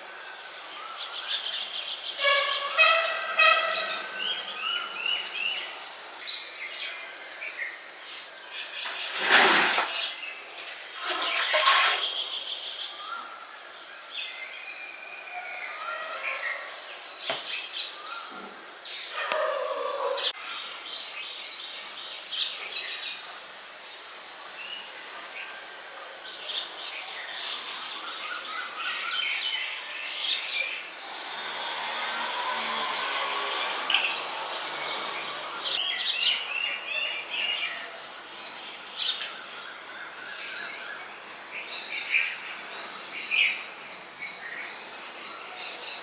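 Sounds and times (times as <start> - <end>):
thin high tone: 0.0 - 8.2
birds chirping: 0.0 - 37.8
outdoor background noise: 0.0 - 46.0
loud noisy burst: 20.4 - 35.8.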